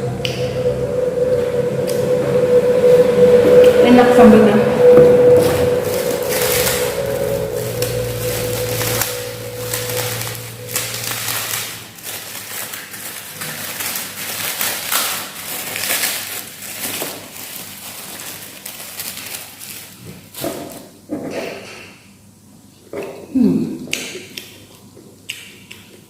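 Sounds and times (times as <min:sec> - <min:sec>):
steady hum: 0:00.0 - 0:20.3.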